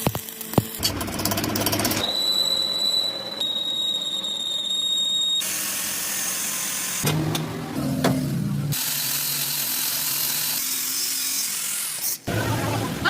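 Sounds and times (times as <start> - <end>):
workshop machinery whine: 0.0 - 10.4.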